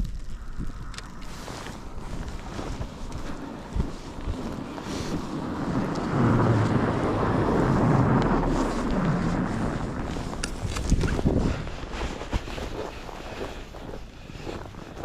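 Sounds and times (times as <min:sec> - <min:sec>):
wind noise on microphone: 0:00.0 - 0:15.0
motor vehicle passing: 0:01.3 - 0:11.1.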